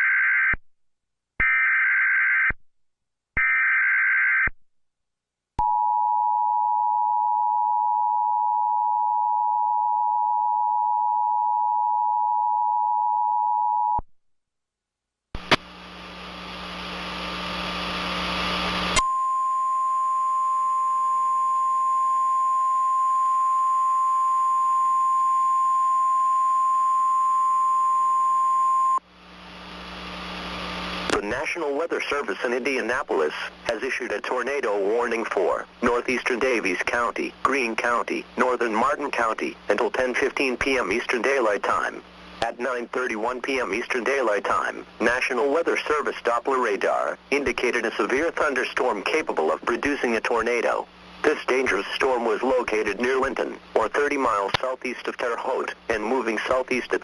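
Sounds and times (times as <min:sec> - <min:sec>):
static hiss: 0:15.4 - 0:19.0, 0:29.1 - 0:34.1
steady weather radio alert tone: 0:31.1 - 0:57.0.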